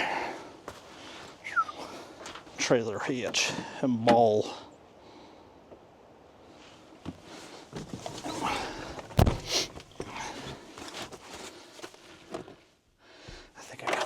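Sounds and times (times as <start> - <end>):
rustling and clattering handling: 7.0 - 12.8, 13.7 - 14.0.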